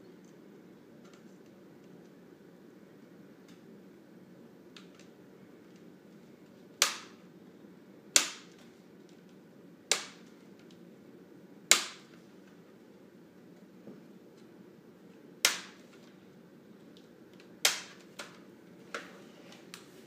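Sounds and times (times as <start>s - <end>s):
plastic clips snapping loose: 17.0s - 18.4s.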